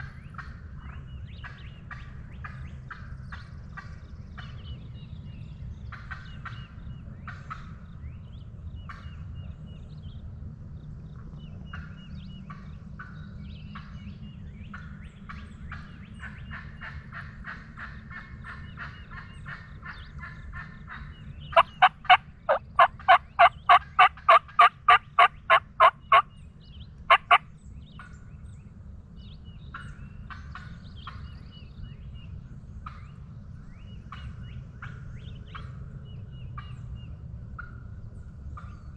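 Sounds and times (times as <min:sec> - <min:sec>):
small birds chirping: 0:17.9 - 0:37.3
turkey yelping: 0:21.6 - 0:26.3, 0:27.1 - 0:27.4.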